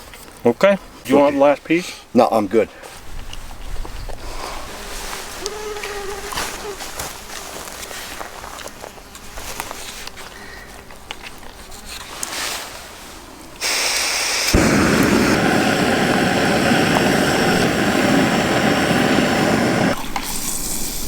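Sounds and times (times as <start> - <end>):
food sizzling in hot oil: 13.6 - 21.0.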